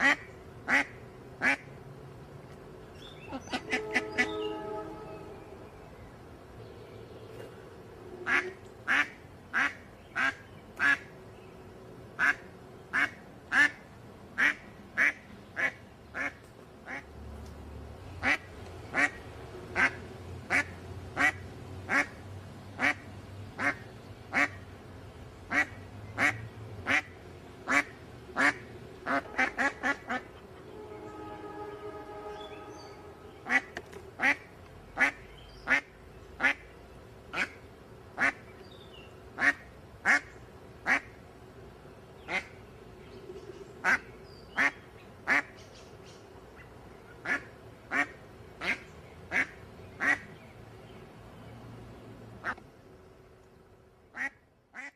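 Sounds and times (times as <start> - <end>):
duck quacking: 0.0 - 1.7, 3.3 - 4.8, 8.2 - 11.1, 18.2 - 22.2, 23.6 - 24.6, 25.5 - 31.3, 33.4 - 36.6, 39.4 - 41.1, 47.2 - 50.2
faint held tone: 3.3 - 6.1.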